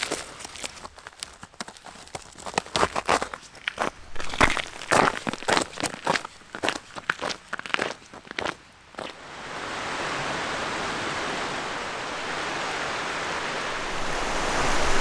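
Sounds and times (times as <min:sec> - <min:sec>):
stream running strongly: 0:09.0 - 0:15.0.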